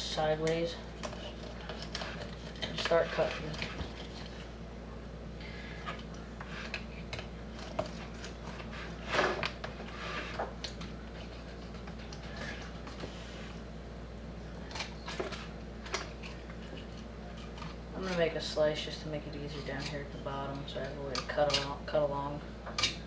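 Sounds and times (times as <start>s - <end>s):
steady low hum: 0.0s - 23.0s
knife scraping fish scales: 1.0s - 4.5s.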